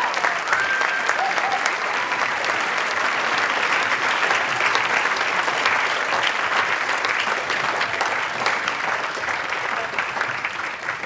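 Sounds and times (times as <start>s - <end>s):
large crowd applauding: 0.0s - 11.0s.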